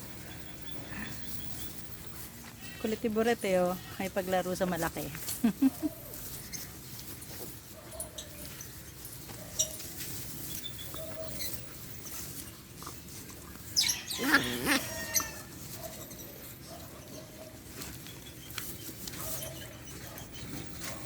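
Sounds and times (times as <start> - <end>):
dogs scuffling and pattering paws: 1.1 - 21.0
dog yelping: 13.8 - 16.0.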